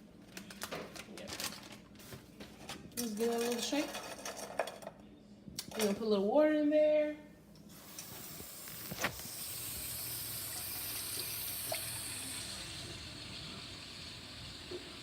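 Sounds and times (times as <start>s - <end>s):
tap water filling a pot: 9.2s - 15.0s.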